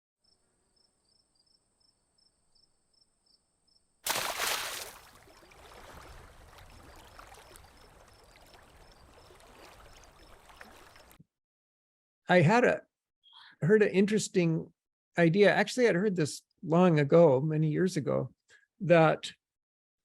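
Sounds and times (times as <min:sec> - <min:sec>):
faint insect-like chirping: 0:00.2 - 0:03.9, 0:06.8 - 0:11.1.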